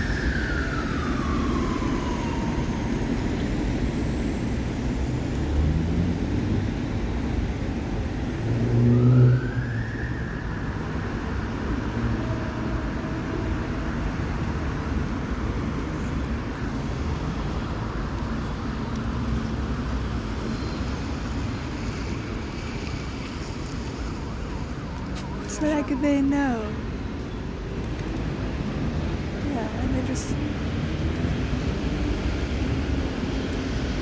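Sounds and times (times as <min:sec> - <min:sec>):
loud vehicle passing with whine: 0:00.0 - 0:17.4
rumble of passing vehicles: 0:00.0 - 0:34.0.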